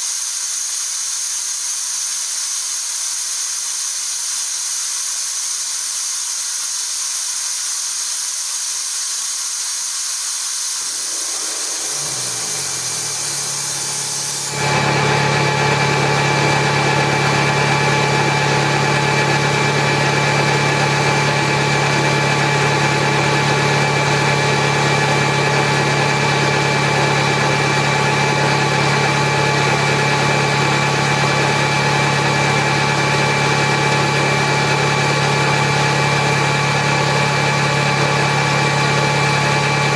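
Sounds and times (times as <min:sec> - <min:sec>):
air hiss: 0:00.0 - 0:14.8
air compressor motor hum: 0:00.0 - 0:22.0.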